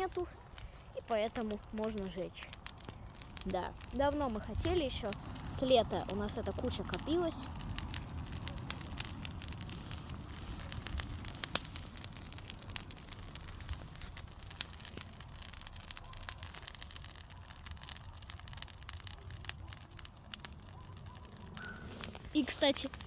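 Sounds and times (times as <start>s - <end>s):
bonfire popping and crackling: 0.0s - 23.0s
low fire rumble: 0.0s - 23.0s.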